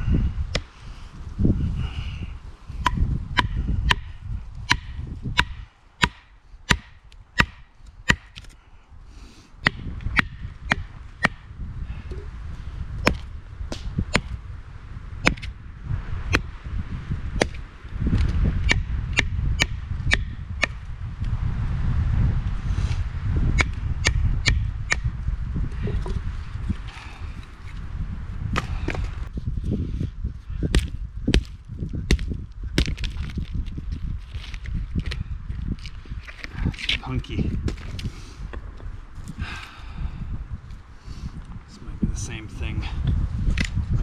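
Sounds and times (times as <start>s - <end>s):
axe chopping wood: 2.8s - 8.5s, 9.6s - 11.4s, 13.0s - 14.4s, 15.2s - 15.5s, 17.4s - 17.6s, 18.2s - 20.8s, 23.6s - 25.0s, 28.6s - 29.1s, 30.7s - 33.2s.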